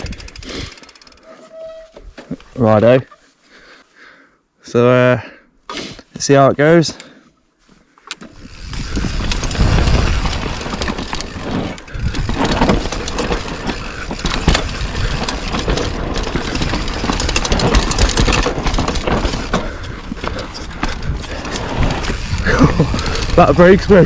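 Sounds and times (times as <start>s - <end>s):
bike clicking and rattling: 0.0s - 2.8s, 8.0s - 24.0s
tyres rolling over rough ground: 8.2s - 24.0s
wind rushing over microphone: 8.4s - 24.0s.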